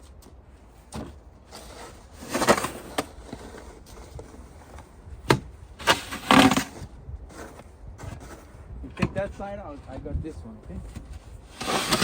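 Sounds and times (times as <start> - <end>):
metal shovel scraping driveway: 1.4 - 4.7, 5.8 - 8.6, 11.5 - 12.0.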